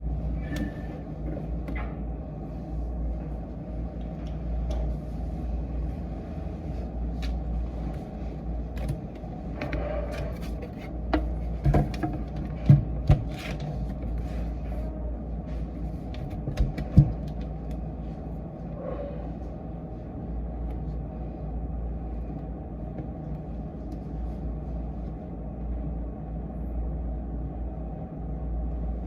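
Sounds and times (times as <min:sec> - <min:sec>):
low room hum: 0:00.0 - 0:29.0.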